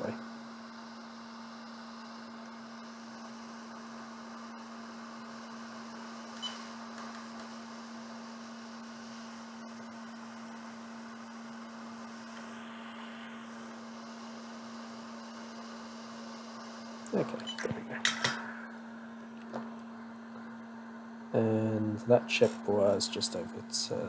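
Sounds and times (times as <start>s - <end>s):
hot-air station blowing: 5.0s - 24.0s.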